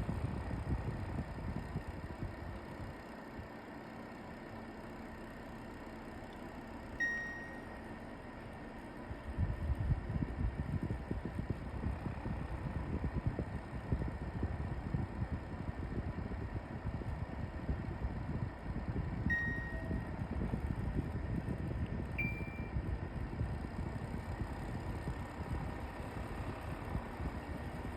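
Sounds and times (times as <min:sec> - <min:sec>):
fan vibrating rumble: 0:00.0 - 0:27.9
short high beep: 0:07.0 - 0:07.8, 0:19.3 - 0:20.1, 0:22.2 - 0:22.8.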